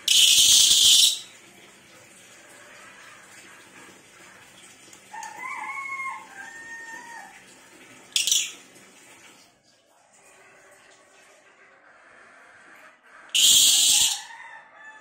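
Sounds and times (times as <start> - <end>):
sharp high-pitched bird call: 0.0 - 1.4, 8.2 - 8.6, 13.4 - 14.3
rooster-like bird call: 5.1 - 7.3, 13.3 - 15.0.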